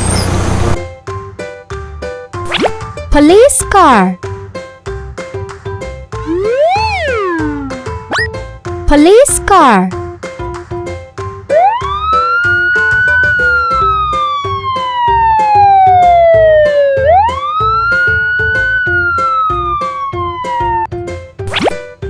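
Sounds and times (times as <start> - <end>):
police siren wailing: 6.2 - 8.3, 11.6 - 20.8
children's music with steady beat: 8.9 - 9.9.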